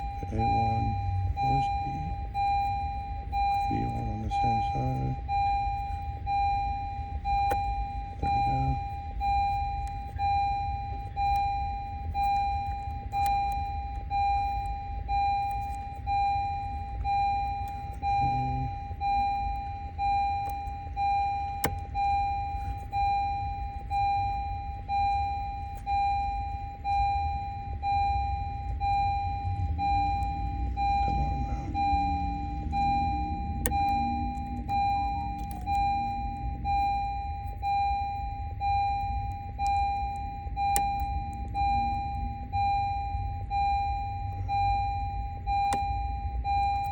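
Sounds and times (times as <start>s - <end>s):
car warning chime: 0.0s - 46.9s.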